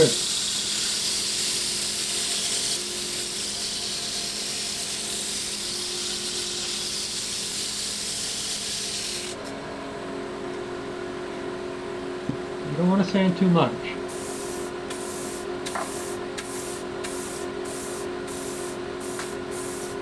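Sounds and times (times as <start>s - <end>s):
sanding wood: 0.0s - 9.4s, 14.1s - 20.0s
lathe running hum: 0.0s - 12.1s, 13.9s - 20.0s.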